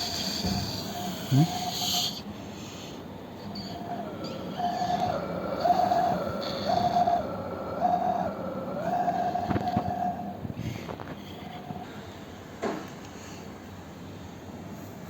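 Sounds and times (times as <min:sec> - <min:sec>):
small electric tool motor whining: 0:00.0 - 0:02.2.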